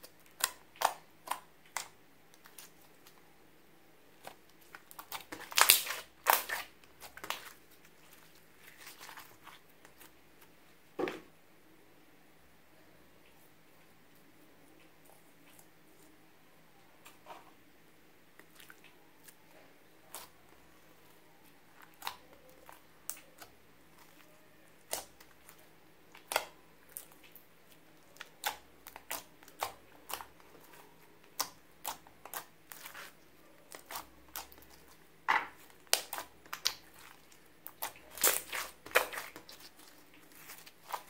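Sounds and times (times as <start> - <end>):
slime popping and crackling: 4.3 - 7.6, 21.8 - 35.0, 35.6 - 41.0.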